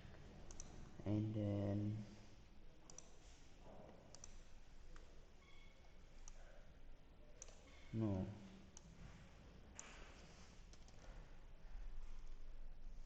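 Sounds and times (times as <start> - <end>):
computer mouse clicks: 0.5 - 0.9, 2.8 - 3.3, 4.0 - 5.1, 6.2 - 6.4, 7.4 - 7.9, 8.7 - 8.9, 9.8 - 11.2.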